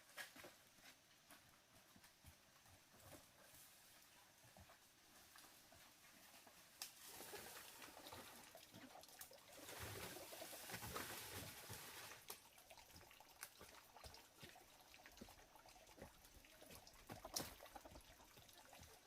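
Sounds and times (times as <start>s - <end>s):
faint trickling water: 5.2s - 19.0s.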